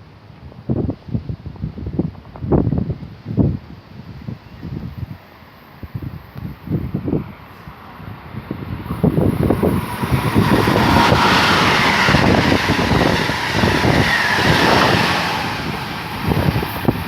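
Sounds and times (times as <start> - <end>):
wind buffeting microphone: 0.4 - 5.2, 5.8 - 17.0
train passing at speed: 3.4 - 17.0.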